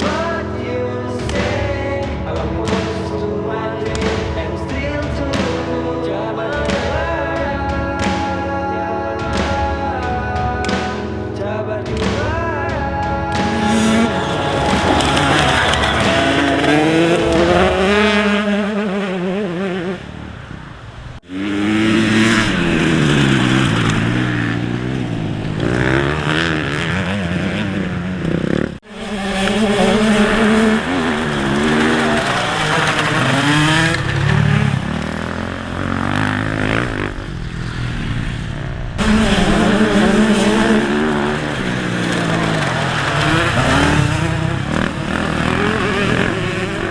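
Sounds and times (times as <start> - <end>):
motorcycle engine revving: 13.3 - 46.9.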